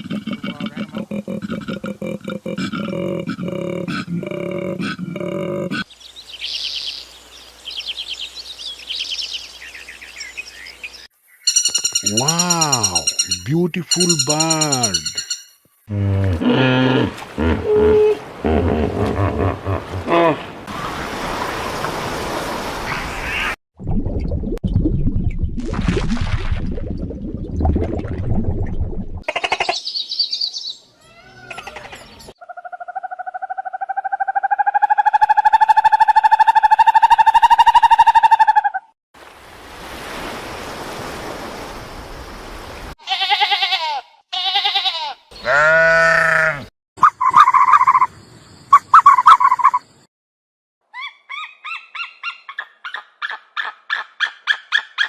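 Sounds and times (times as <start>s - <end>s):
songbird trilling: 7.8s - 15.6s.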